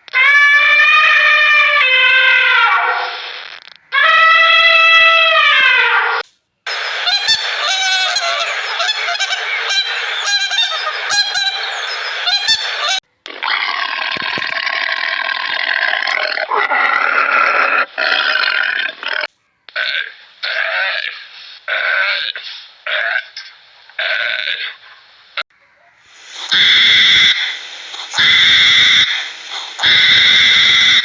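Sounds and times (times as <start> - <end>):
animal calls: 0.1 - 13.6, 25.6 - 31.0.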